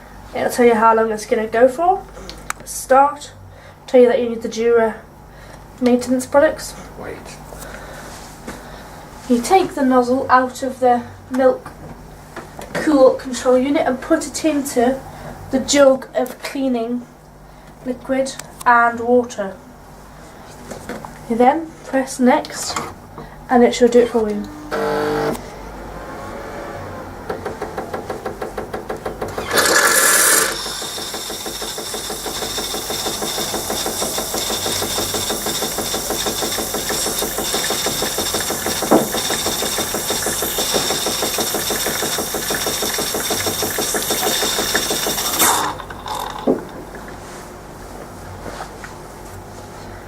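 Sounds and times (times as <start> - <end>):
pump pulsing rapidly: 29.4 - 46.3
loud hiss: 29.5 - 45.8
pumping drone with hiss: 29.7 - 45.7.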